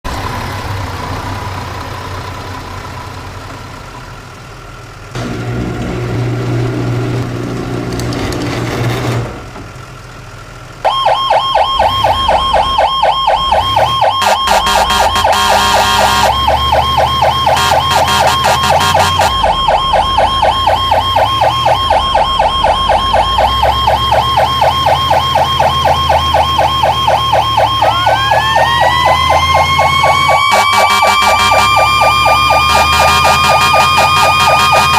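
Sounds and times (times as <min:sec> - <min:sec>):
truck cab rumble: 0:00.0 - 0:34.9
electronic siren yelping: 0:10.8 - 0:34.9
siren winding up: 0:10.8 - 0:34.9.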